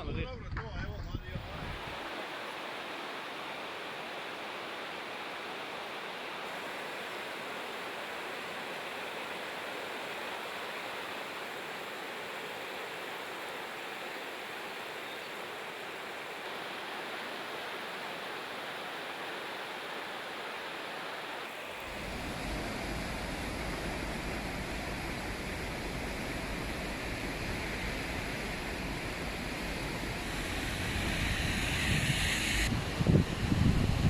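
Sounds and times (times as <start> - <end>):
floodwater rushing: 1.4 - 33.7.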